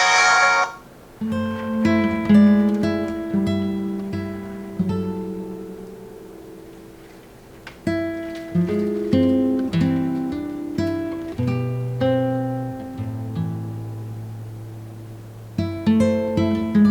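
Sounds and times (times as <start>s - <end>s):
plucked guitar melody: 1.2s - 7.1s.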